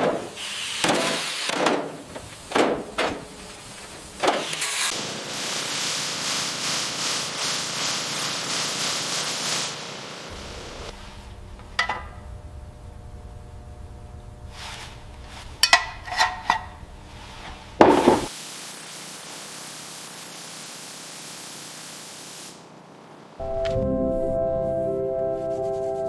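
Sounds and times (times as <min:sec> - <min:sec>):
faint steady hiss: 0:17.0 - 0:24.5.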